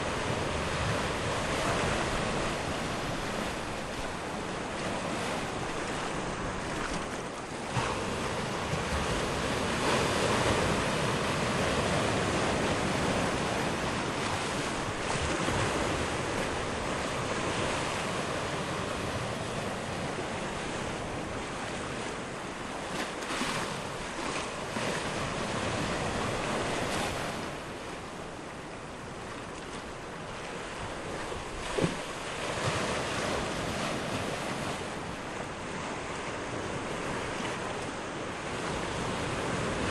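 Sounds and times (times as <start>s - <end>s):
wind on microphone: 0.0s - 22.2s
sea waves washing on shore: 0.0s - 39.9s.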